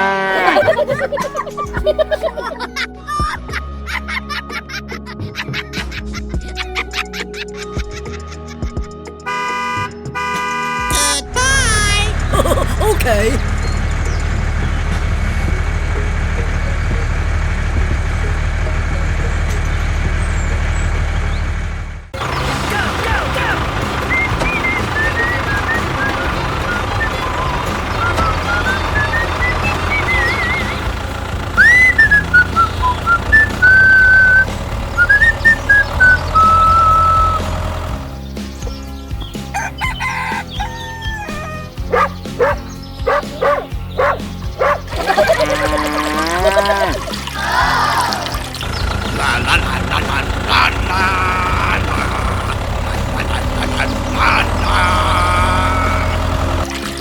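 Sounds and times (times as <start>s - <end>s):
vehicle engine idling: 9.3s - 46.0s, 46.6s - 56.9s
whistled melody: 24.0s - 31.0s, 31.6s - 37.6s, 41.9s - 48.9s
yelp-like calls: 39.6s - 48.7s.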